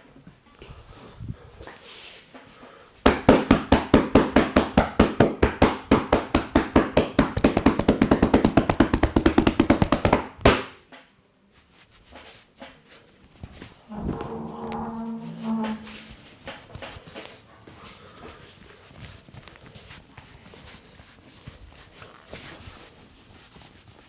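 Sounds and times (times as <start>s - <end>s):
hands slapping a back: 3.1s - 11.0s.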